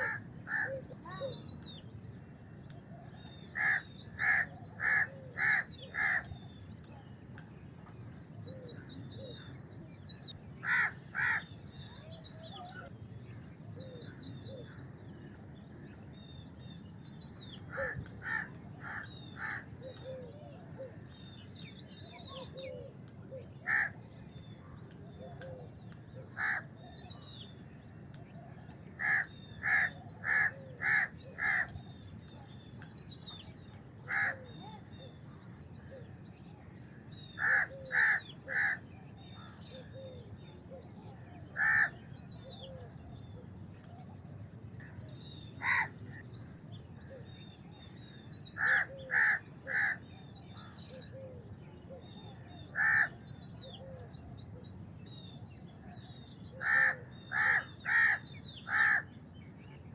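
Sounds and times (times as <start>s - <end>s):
crow cawing: 0.0s - 0.8s, 3.6s - 6.3s, 10.6s - 11.5s, 17.7s - 19.6s, 23.7s - 23.9s, 26.4s - 26.7s, 29.0s - 31.7s, 34.1s - 34.4s, 37.4s - 38.8s, 41.6s - 42.0s, 45.6s - 45.9s, 48.6s - 50.0s, 52.8s - 53.1s, 56.6s - 59.1s
small birds twittering: 0.0s - 59.9s.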